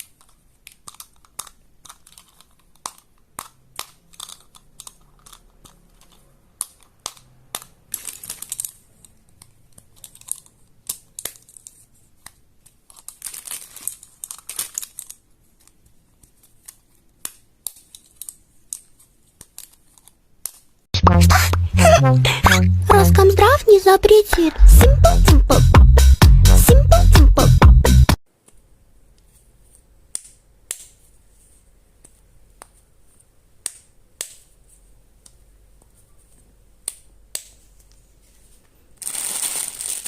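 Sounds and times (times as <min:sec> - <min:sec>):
crinkling or rubbing: 0:00.0 - 0:20.8, 0:37.5 - 0:40.0.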